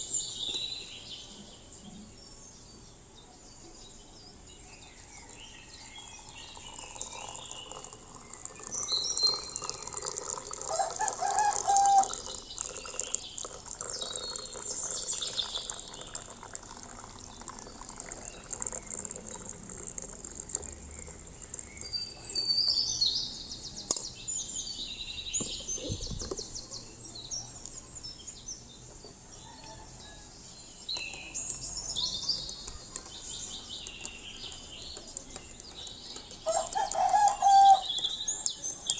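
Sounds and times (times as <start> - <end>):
birds chirping and calling: 6.0 - 16.3, 20.9 - 29.9, 30.6 - 38.9
lower bird call: 10.7 - 12.3.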